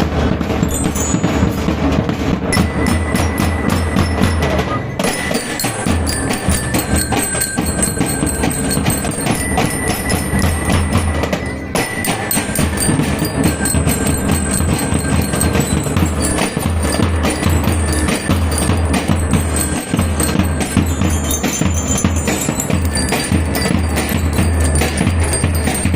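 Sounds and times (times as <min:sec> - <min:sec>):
fast drumming: 0:00.0 - 0:25.9
bell lyres playing melody: 0:00.6 - 0:25.9.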